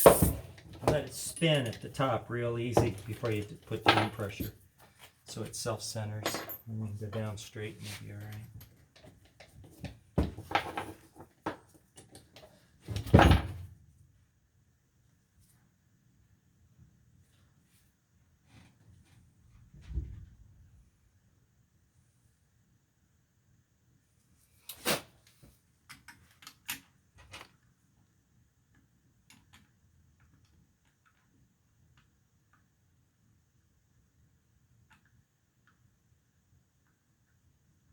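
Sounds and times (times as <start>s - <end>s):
tools clattering on workbench: 0.0s - 2.1s, 2.7s - 4.5s, 6.2s - 9.1s, 9.8s - 12.3s.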